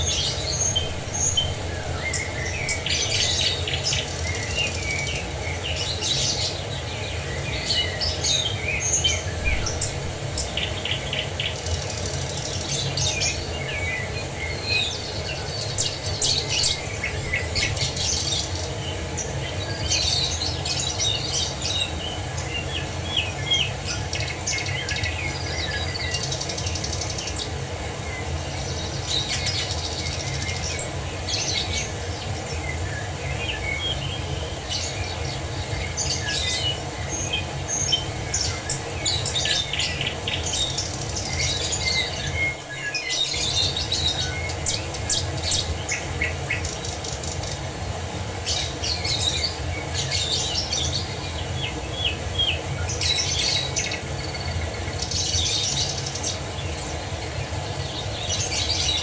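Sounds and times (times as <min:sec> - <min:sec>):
small birds chirping and trilling: 0:00.0 - 0:59.0.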